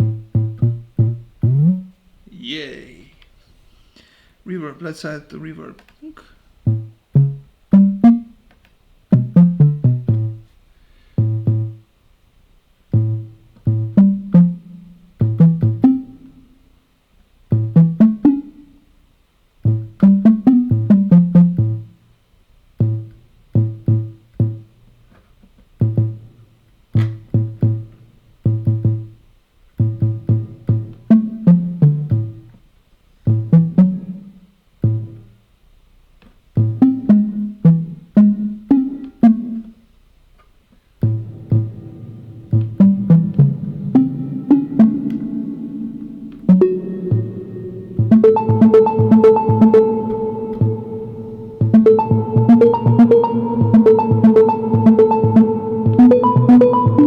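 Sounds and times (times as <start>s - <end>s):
synthesizer plucked notes: 0.0s - 1.8s, 6.7s - 8.4s, 9.1s - 10.5s, 11.2s - 11.8s, 12.9s - 16.5s, 17.5s - 18.8s, 19.6s - 21.9s, 22.8s - 24.7s, 25.8s - 26.4s, 27.0s - 29.2s, 29.8s - 32.5s, 33.3s - 34.2s, 36.6s - 39.7s, 41.0s - 57.0s.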